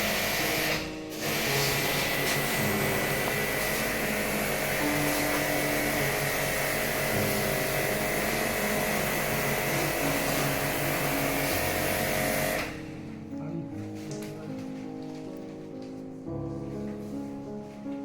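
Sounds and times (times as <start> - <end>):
spraying water hiss: 0.0 - 12.6
pressure washer whine: 0.0 - 12.8.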